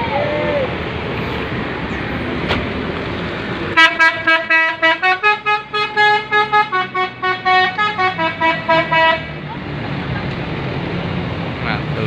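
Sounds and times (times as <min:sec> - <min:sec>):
street noise: 0:00.0 - 0:12.0
bus musical horn tune: 0:03.8 - 0:09.4.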